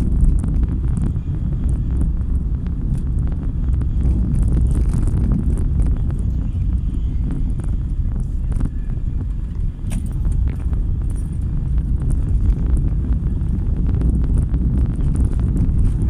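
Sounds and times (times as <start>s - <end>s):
engine and tyre rumble: 0.0s - 16.0s.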